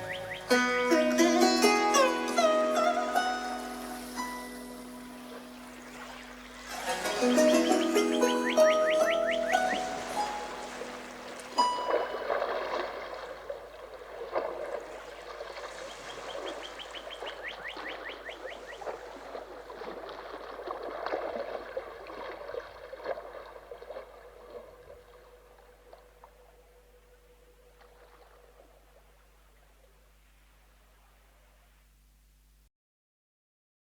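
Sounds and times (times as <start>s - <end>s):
bird chirps: 0.0s - 0.7s, 5.2s - 10.6s, 15.7s - 18.9s
splashes and knocks: 0.0s - 29.9s
water lapping and gurgling: 0.0s - 32.0s.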